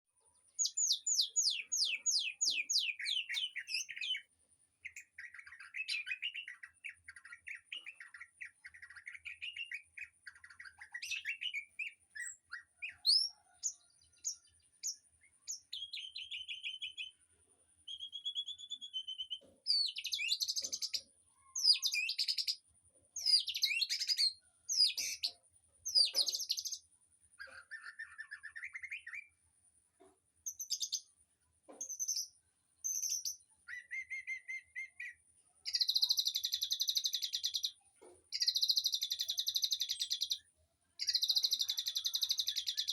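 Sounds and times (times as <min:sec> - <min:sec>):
songbirds singing and chirping: 0:00.1 - 0:42.9.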